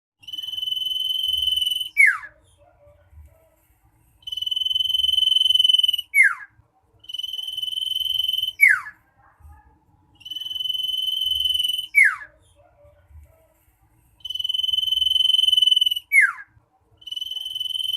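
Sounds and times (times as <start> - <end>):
bird whistling song: 0.2 - 2.4, 4.2 - 9.0, 10.2 - 12.4, 14.2 - 17.9.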